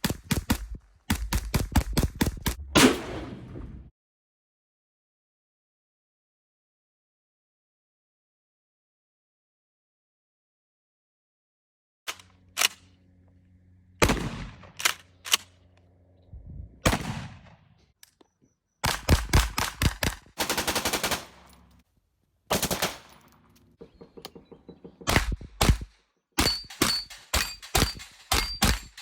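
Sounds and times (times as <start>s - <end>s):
submachine gun firing: 0.0s - 3.4s, 14.0s - 15.4s, 18.8s - 21.5s, 22.5s - 23.2s, 25.0s - 29.0s.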